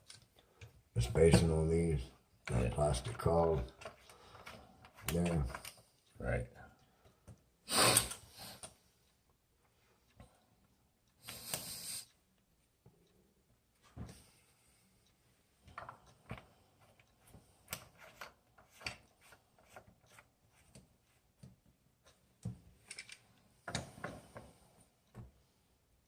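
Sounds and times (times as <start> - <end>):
faucet parts clicking and scraping: 22.8 - 23.8.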